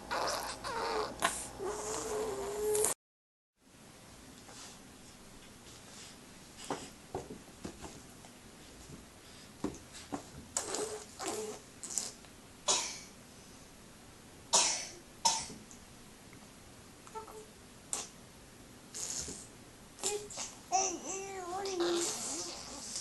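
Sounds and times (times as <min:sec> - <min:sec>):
baby making throaty cough-like sounds: 0:12.7 - 0:13.1, 0:14.6 - 0:15.5.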